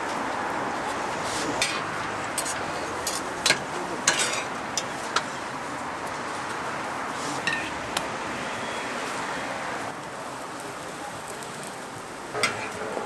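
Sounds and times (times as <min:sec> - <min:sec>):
hot oil sizzling: 0:00.0 - 0:13.0.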